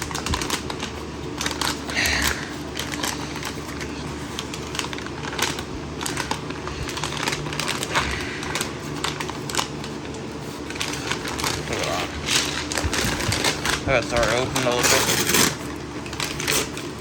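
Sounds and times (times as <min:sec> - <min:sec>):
package crinkling and crackling: 0:00.0 - 0:17.0.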